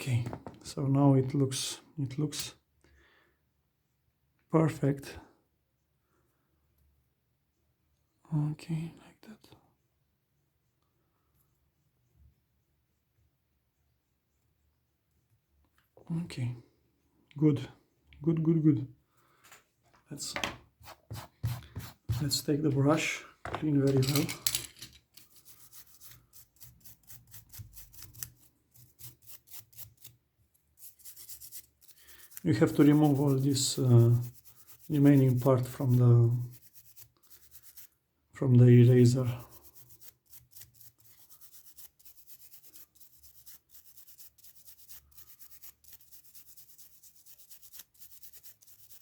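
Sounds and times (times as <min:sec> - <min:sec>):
small brush scrubbing metal: 0:20.8 - 0:49.0.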